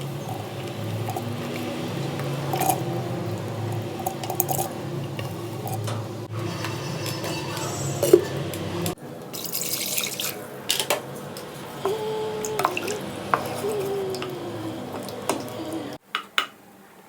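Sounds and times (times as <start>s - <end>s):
water splashing and trickling: 9.3s - 10.9s, 12.0s - 16.0s.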